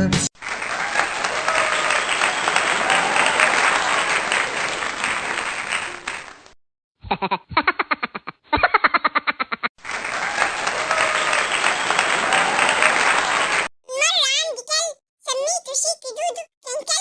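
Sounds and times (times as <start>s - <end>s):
applause: 0.4s - 6.6s, 9.8s - 13.7s.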